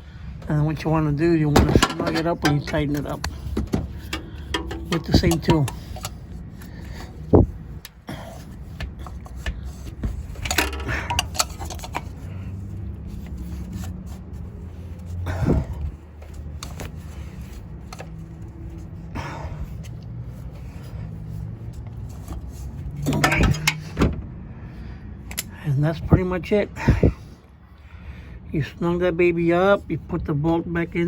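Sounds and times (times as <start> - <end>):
steady low hum: 0.0 - 29.2
metallic knocks: 1.5 - 6.2
clattery tool scrapes: 1.7 - 15.3.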